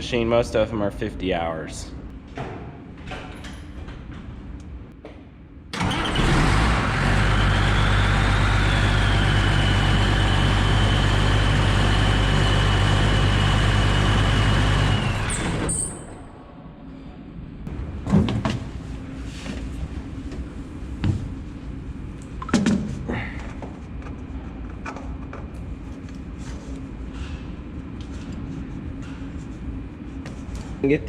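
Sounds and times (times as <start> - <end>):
motor-driven machine humming and whining: 6.7 - 15.8.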